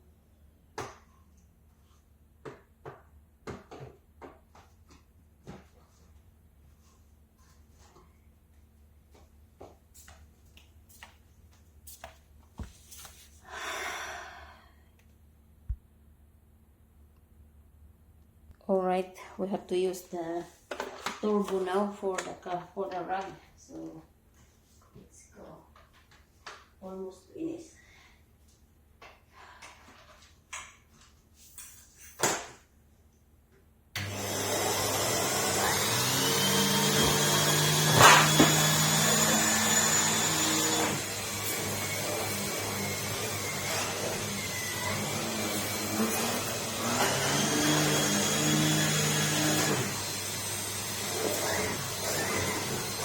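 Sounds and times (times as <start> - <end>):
vacuum cleaner motor starting up: 34.0 - 53.0.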